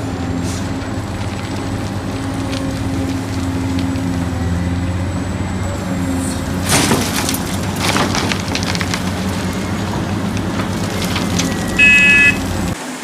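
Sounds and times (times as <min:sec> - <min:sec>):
low motor hum: 0:00.0 - 0:12.8
held tones: 0:11.6 - 0:12.5.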